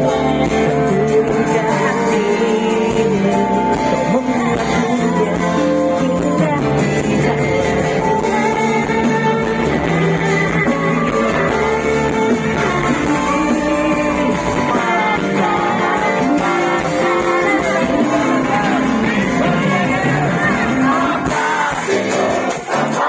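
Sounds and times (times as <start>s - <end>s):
live band playing pop song: 0.0s - 23.0s
person singing: 0.0s - 23.0s.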